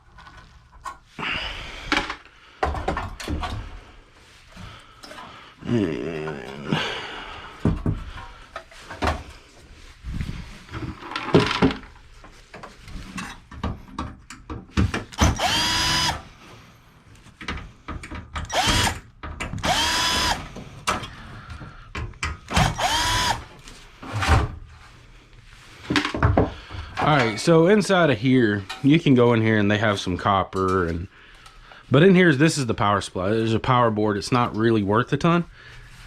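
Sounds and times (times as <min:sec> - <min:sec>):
power drill whine: 0:15.2 - 0:16.3, 0:18.5 - 0:19.0, 0:19.6 - 0:20.6, 0:22.5 - 0:23.5.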